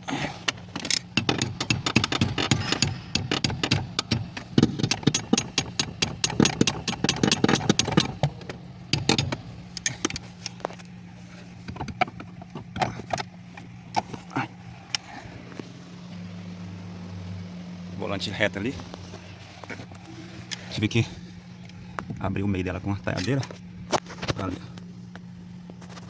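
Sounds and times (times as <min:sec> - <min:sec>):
steady low hum: 0:00.0 - 0:26.0
hammer striking steel chisel: 0:01.2 - 0:09.4.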